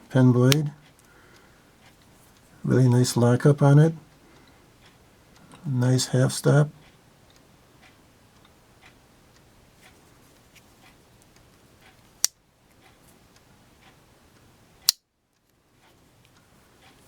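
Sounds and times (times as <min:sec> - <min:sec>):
faint light ticking: 0:00.0 - 0:17.0.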